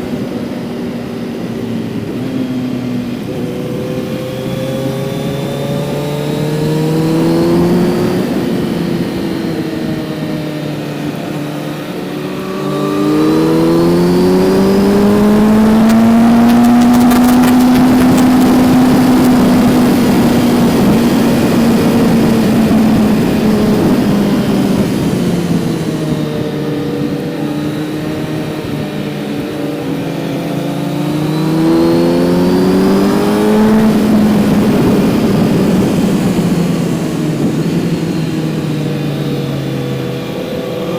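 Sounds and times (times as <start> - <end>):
motorcycle engine revving: 12.8 - 20.4.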